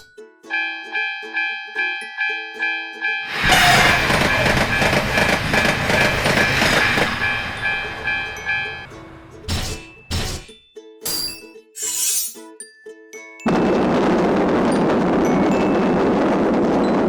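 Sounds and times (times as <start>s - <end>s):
train passing: 0.0s - 9.5s, 13.5s - 17.0s
railroad crossing warning tones: 0.0s - 9.6s.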